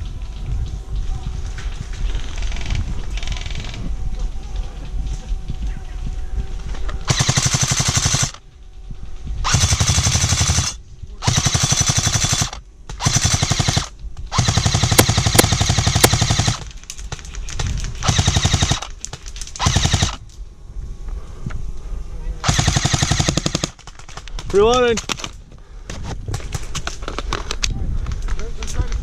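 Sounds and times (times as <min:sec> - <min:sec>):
airsoft gun firing bursts: 0:07.1 - 0:08.4, 0:09.4 - 0:16.7, 0:18.0 - 0:19.0, 0:19.6 - 0:20.2, 0:22.4 - 0:23.8.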